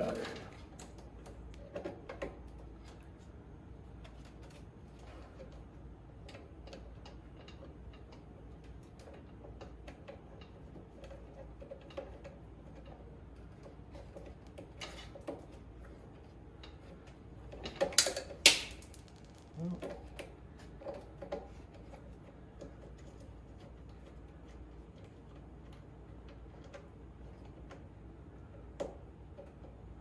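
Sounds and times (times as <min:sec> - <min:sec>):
hand tools clicking and tapping: 0:05.3 - 0:27.9.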